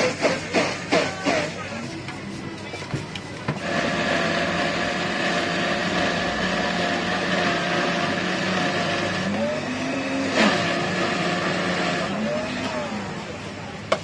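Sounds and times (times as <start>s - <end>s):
blender motor whining: 3.5s - 13.6s.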